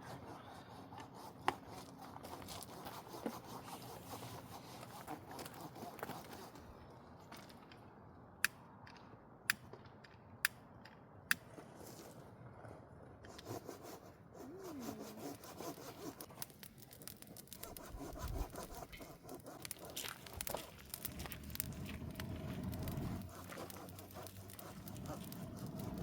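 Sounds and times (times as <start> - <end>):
wood scraping rub: 13.3 - 26.0.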